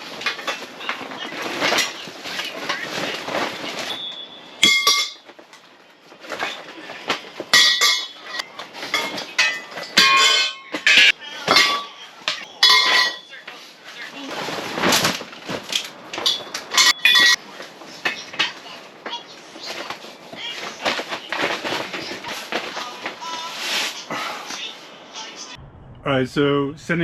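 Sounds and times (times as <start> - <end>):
metal clanks and clinks: 7.5 - 13.3, 16.2 - 17.4.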